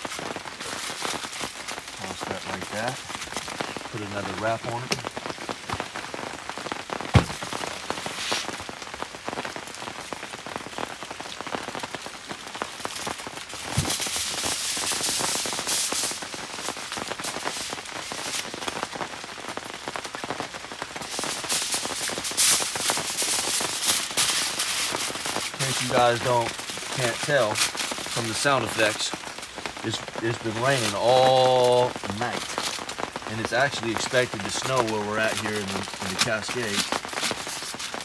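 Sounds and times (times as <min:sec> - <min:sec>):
crackly rustling: 0:00.0 - 0:38.0
rain pattering: 0:00.0 - 0:38.0
sharp knocks: 0:07.1 - 0:07.6.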